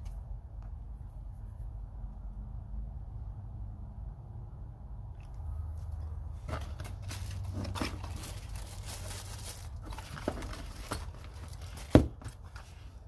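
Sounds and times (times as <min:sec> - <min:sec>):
packaging rustling: 0:06.4 - 0:12.8.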